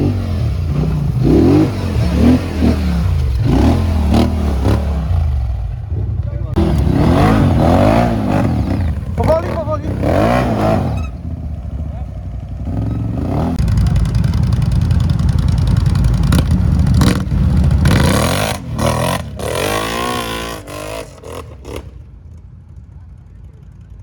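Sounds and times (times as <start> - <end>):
atv engine revving: 0.0 - 22.0.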